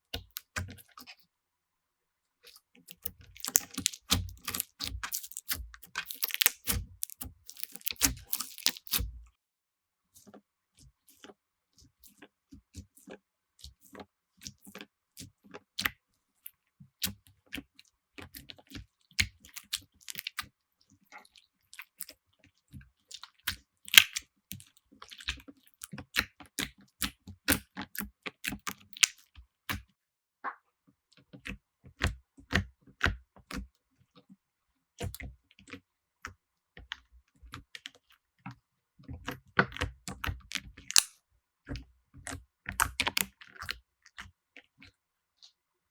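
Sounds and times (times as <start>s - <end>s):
slime sticky clicks and pops: 3.0s - 9.0s, 23.9s - 24.2s, 40.9s - 41.1s.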